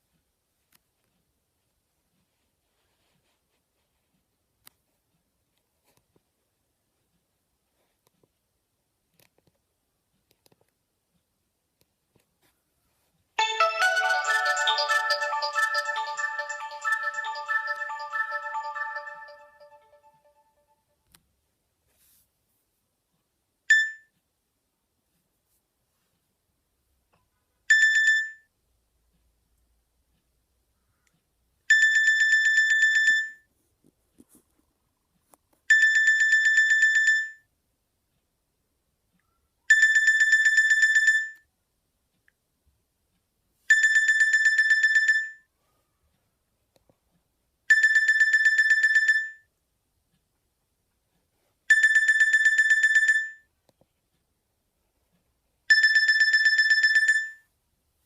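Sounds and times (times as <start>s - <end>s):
phone ringtone trilling: 13.4s - 20.7s, 55.7s - 57.4s.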